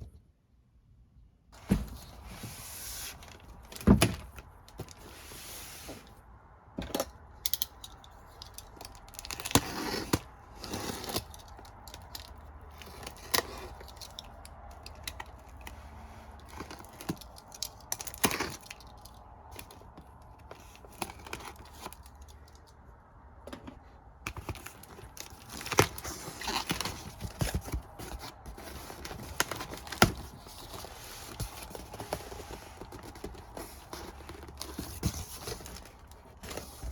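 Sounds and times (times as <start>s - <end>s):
packaging rustling and tearing: 8.0s - 22.6s, 24.3s - 36.9s.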